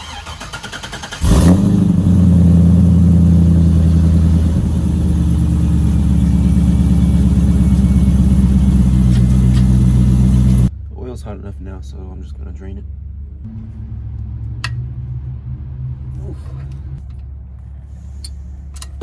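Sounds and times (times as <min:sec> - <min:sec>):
starter motor cranking: 0:00.0 - 0:02.6
car engine idling: 0:00.0 - 0:10.9, 0:11.7 - 0:19.0.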